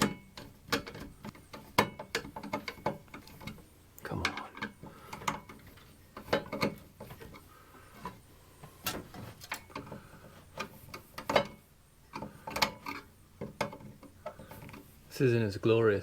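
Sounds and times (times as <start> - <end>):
hands handling cable clicks and scrapes: 0.0 - 15.0.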